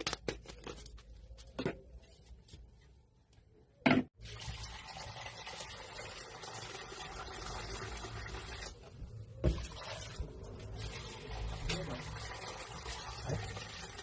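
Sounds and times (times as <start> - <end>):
water filling a container: 4.2 - 14.0.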